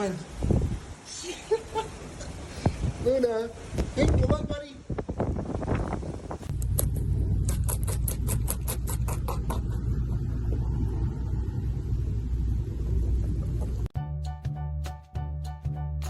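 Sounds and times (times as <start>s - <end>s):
wind buffeting microphone: 0.3s - 1.0s, 2.3s - 13.9s.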